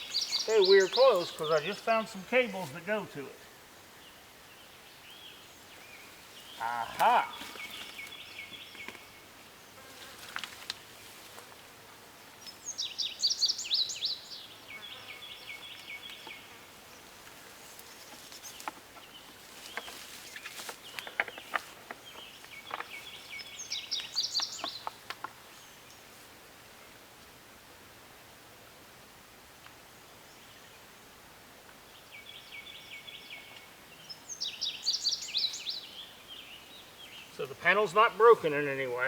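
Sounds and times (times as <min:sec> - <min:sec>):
rustles: 0:00.0 - 0:03.7, 0:05.4 - 0:28.1
songbird singing: 0:00.0 - 0:10.1, 0:12.3 - 0:26.1, 0:31.7 - 0:39.0.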